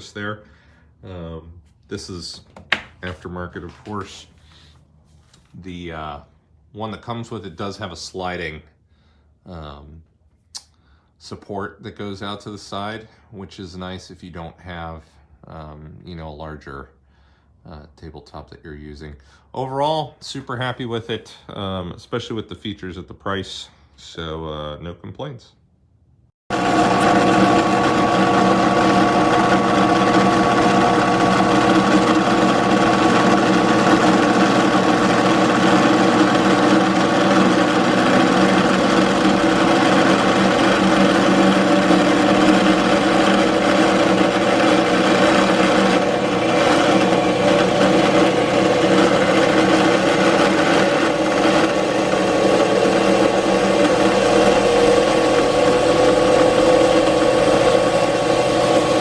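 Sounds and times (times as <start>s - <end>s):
electric motor humming and whining: 26.5s - 59.0s.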